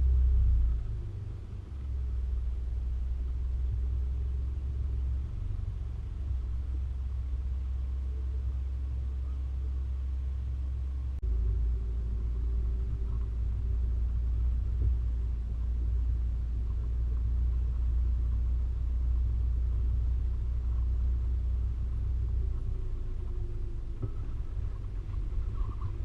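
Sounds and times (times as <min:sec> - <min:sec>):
faint hum: 0:00.0 - 0:26.0
road noise: 0:00.0 - 0:26.0
vehicle engine rumble: 0:00.0 - 0:26.0.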